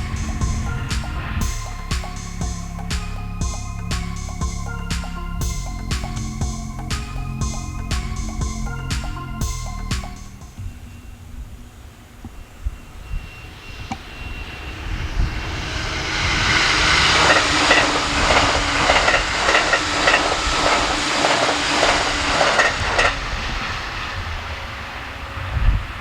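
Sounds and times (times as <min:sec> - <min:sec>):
rhythmic wheel clatter: 0:00.0 - 0:11.0, 0:16.8 - 0:23.4
train rushing past: 0:00.0 - 0:26.0.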